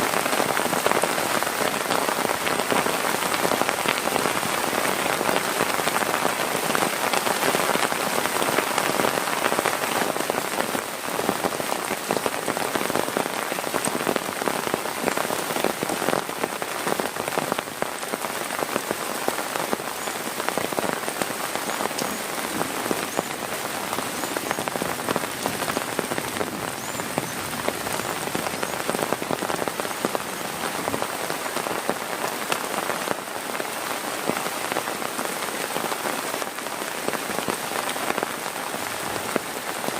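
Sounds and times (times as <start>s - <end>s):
heavy rain falling: 0.0s - 39.9s
raindrops ticking close by: 0.1s - 39.9s.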